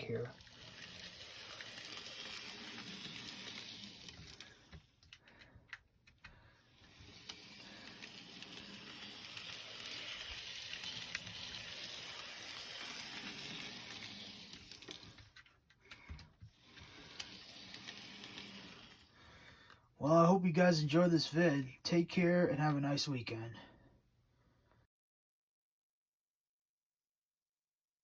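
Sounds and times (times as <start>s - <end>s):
model train motor whirring: 0.0s - 5.1s, 6.5s - 15.4s, 16.4s - 19.7s.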